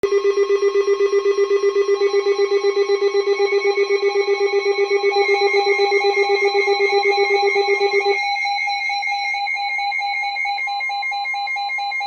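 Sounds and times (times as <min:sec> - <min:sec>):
pulsing electronic alert tone: 0:00.2 - 0:09.4.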